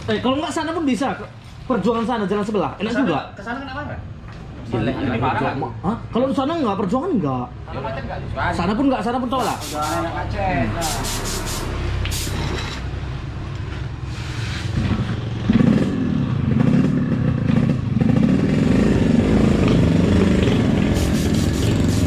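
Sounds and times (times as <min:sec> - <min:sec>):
motorcycle engine revving: 0:14.7 - 0:22.0.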